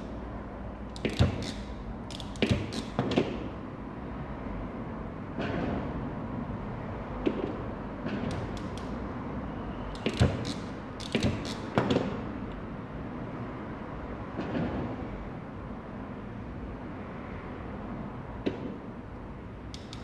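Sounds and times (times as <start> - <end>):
tools clicking and knocking: 0.9 - 3.3, 8.2 - 9.0, 10.0 - 12.0, 19.7 - 20.0.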